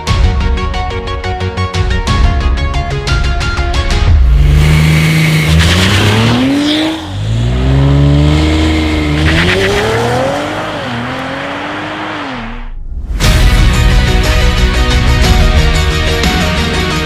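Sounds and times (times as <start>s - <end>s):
car engine accelerating hard: 4.2s - 12.7s.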